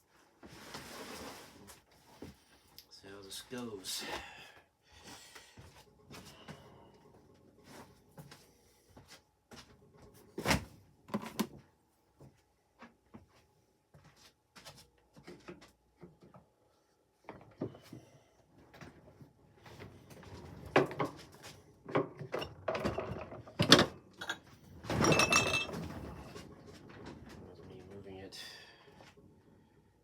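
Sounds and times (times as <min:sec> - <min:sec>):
dishwasher rack and door clatter: 0:21.9 - 0:27.7.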